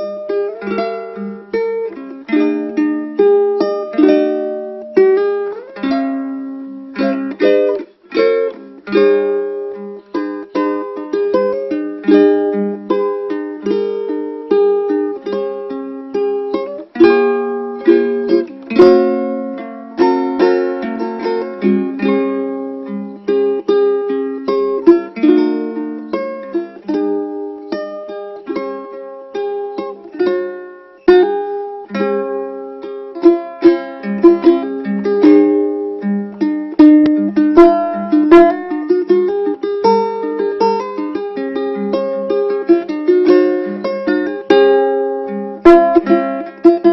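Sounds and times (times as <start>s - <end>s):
ukulele playing: 0.0s - 46.9s.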